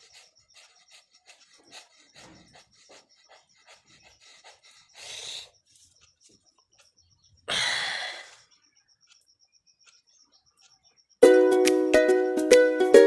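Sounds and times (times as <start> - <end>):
person breathing out hard: 7.5 - 8.4.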